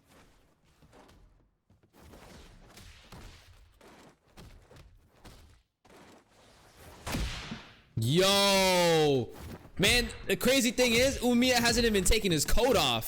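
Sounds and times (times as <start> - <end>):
punch and hit impacts: 7.0 - 7.8.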